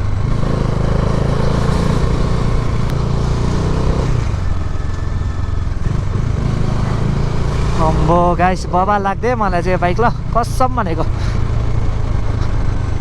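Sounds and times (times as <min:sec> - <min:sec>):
motorcycle engine humming: 0:00.0 - 0:13.0.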